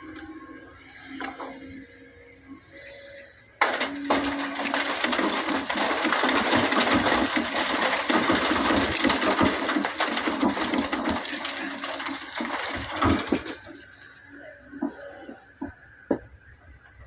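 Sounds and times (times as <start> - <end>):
sand pouring into steel truck bed: 3.6 - 14.0.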